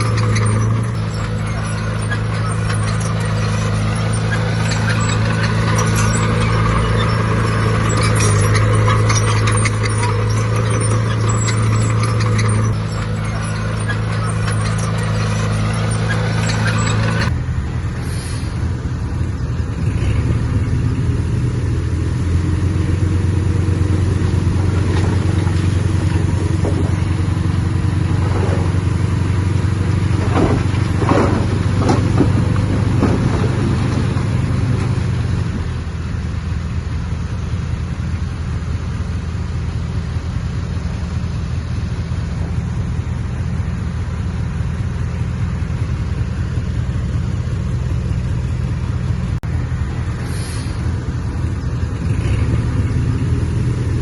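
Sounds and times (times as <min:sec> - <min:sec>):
metal clanks and scrapes: 0:00.0 - 0:17.4, 0:24.4 - 0:35.8
heavy diesel engine running: 0:00.0 - 0:54.0.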